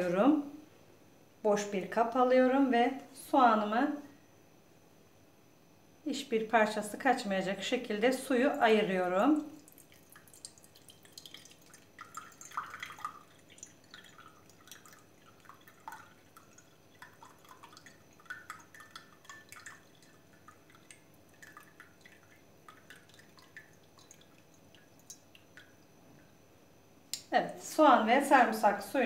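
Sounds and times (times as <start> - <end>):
liquid dripping and trickling: 8.3 - 26.4.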